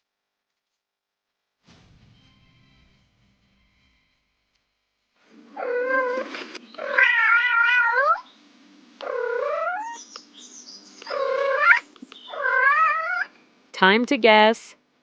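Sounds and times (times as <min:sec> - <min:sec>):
cat meowing: 0:05.6 - 0:08.3, 0:09.0 - 0:10.0, 0:11.0 - 0:13.3.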